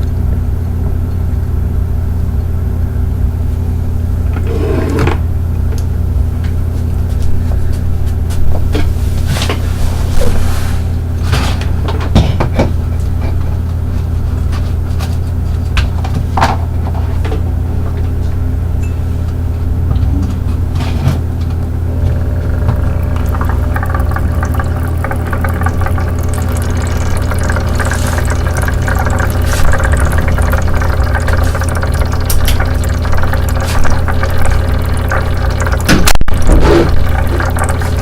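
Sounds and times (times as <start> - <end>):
low motor hum: 0.0 - 38.0
water bubbling and gurgling: 21.7 - 38.0.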